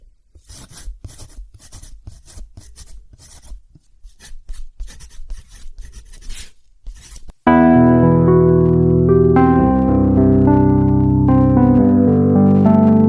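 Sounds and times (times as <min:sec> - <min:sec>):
drawing tool rubbing on paper: 0:00.4 - 0:07.4.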